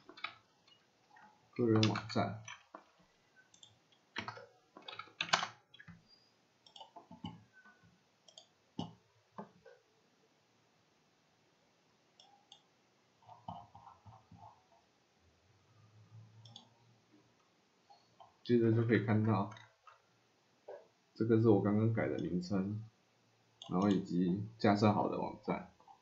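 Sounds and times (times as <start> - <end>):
computer mouse clicks: 0.0 - 6.0, 6.6 - 9.6, 12.2 - 14.8, 16.4 - 16.7, 23.6 - 24.1.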